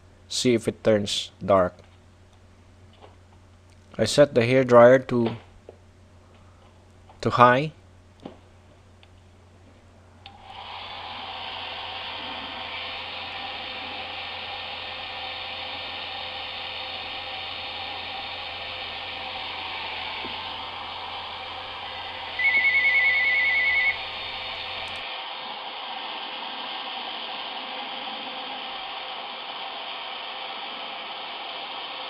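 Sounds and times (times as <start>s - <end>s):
hair dryer running: 10.3s - 32.0s
fast electronic beeping: 22.4s - 24.1s.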